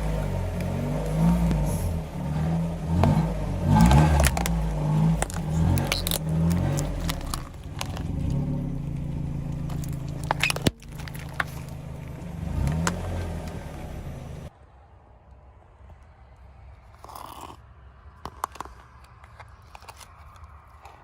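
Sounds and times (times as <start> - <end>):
car engine running: 0.0 - 14.5
sharp clicks and crackles: 3.0 - 13.6, 16.9 - 21.0.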